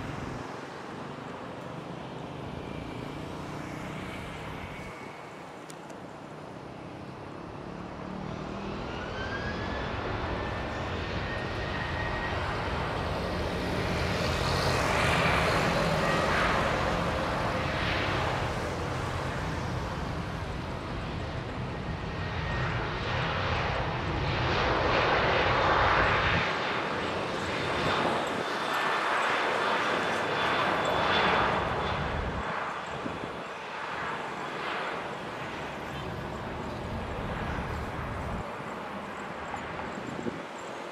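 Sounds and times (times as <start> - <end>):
jet engines whining: 8.3 - 40.9.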